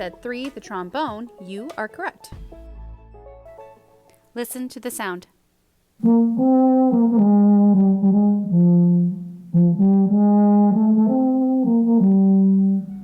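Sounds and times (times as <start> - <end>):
euphonium melody: 6.0 - 13.0.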